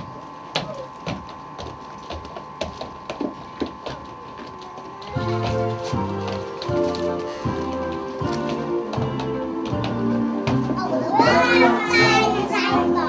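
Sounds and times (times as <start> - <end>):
steady hum: 0.0 - 13.0
music with sustained notes: 5.0 - 13.0.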